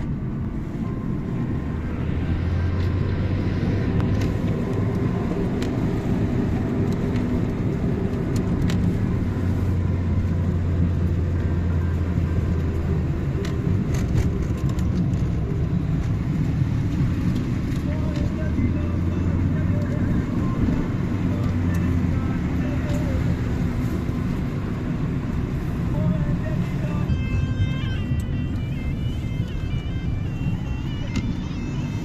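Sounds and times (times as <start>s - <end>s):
car engine droning: 0.0s - 32.0s.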